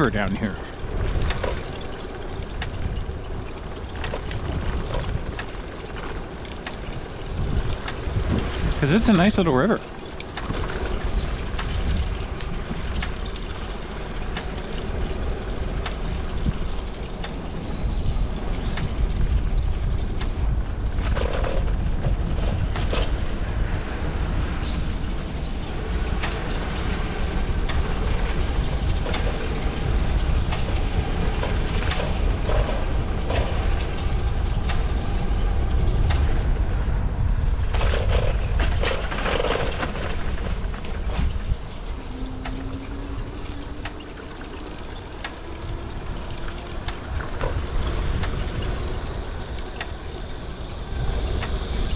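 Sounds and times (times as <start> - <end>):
bicycle clicks and rattles: 0.0 - 51.9
bicycle rolling rumble: 0.0 - 51.9
wind buffeting microphone: 0.0 - 51.9.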